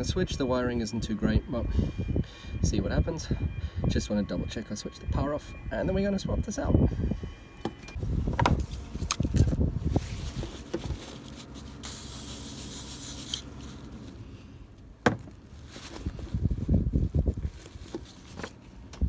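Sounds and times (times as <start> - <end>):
burst of hiss: 11.8 - 13.4.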